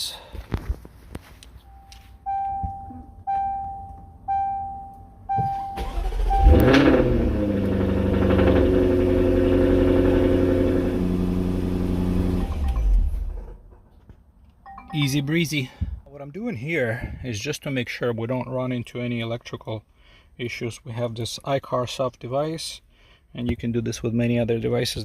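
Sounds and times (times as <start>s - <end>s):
car warning chime: 1.6s - 6.9s, 12.3s - 13.3s, 14.7s - 15.8s
engine cranking: 5.8s - 8.6s
engine revving and idling: 5.8s - 13.3s.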